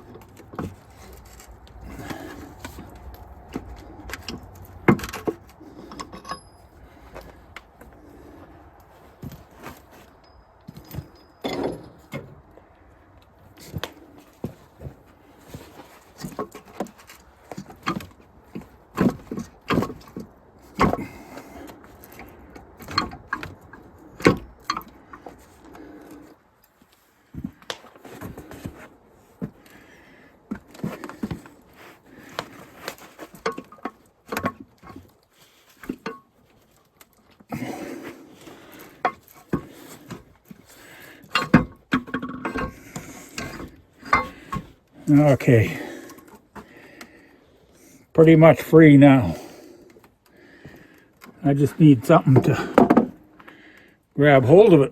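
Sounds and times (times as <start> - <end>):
tools knocking and clinking: 0.2 - 7.3, 10.1 - 12.4, 35.8 - 36.3, 41.2 - 44.8.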